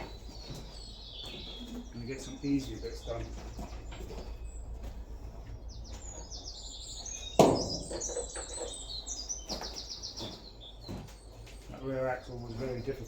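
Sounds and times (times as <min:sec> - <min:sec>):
songbird trilling: 0:00.0 - 0:04.8, 0:05.7 - 0:13.0
sharp knocks: 0:07.4 - 0:08.5.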